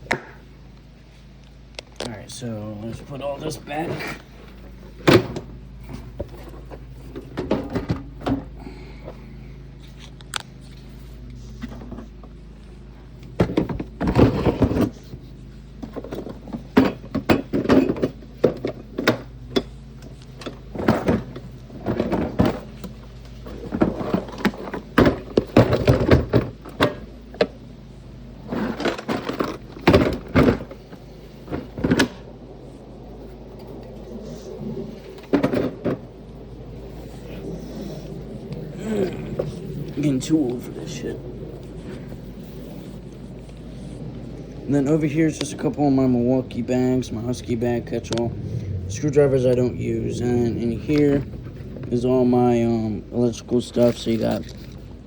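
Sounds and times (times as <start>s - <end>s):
plastic bins knocking and clunking: 5.0s - 8.7s, 13.4s - 15.2s, 15.8s - 19.7s, 23.6s - 27.5s, 28.6s - 32.2s.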